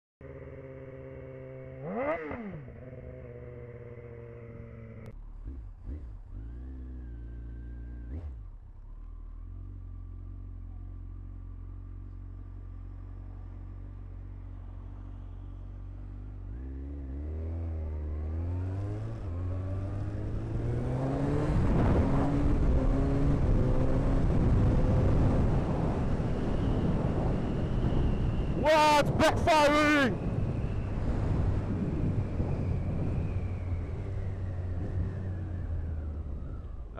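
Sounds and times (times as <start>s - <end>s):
motorcycle revving and pulling away: 0.2s - 28.7s, 29.8s - 36.9s
motorcycle engine idling: 7.1s - 16.4s
wind noise on microphone: 20.4s - 36.9s.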